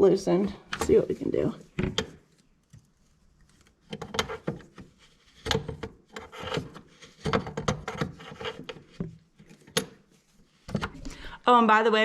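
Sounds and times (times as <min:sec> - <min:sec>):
hand tool scraping metal: 0:03.9 - 0:09.6.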